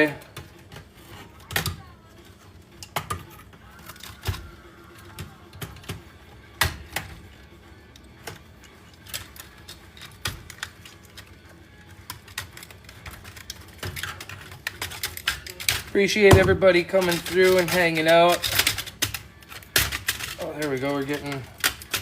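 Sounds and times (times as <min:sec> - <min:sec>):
metal and plastic parts clattering: 0:00.0 - 0:22.0
hand tools clicking and snipping: 0:07.9 - 0:22.0.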